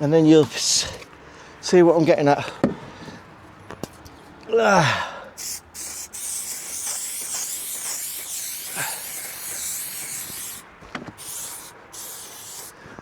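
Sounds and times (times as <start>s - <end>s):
aerosol spray can hissing: 5.4s - 12.8s.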